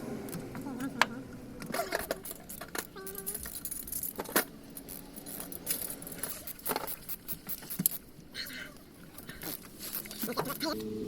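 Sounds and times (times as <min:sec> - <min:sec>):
metal tools clicking and rattling: 0:01.6 - 0:07.9.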